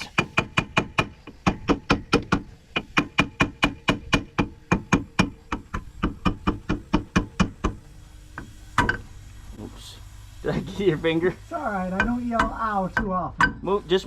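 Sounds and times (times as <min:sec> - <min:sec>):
hammer striking metal: 0:12.0 - 0:13.6.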